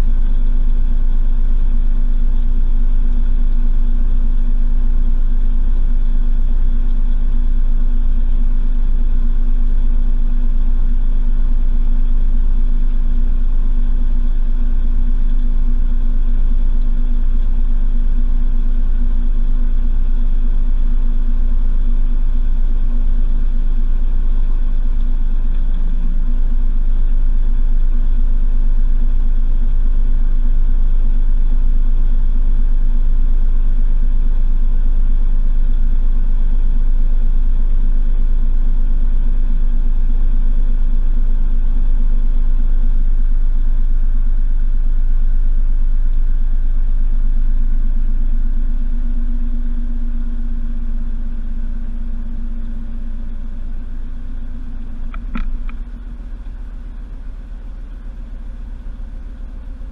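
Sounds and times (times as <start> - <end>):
motor hum: 0.0 - 59.9.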